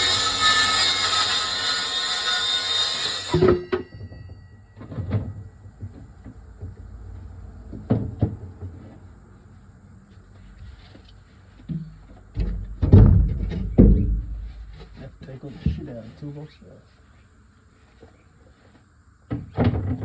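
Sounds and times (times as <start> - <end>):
power tool motor whining: 0.0 - 3.5
knocks: 11.7 - 14.7.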